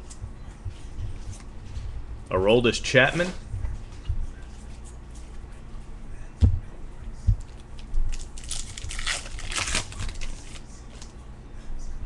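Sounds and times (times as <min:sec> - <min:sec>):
wrapper tearing and crinkling: 0:07.8 - 0:10.6.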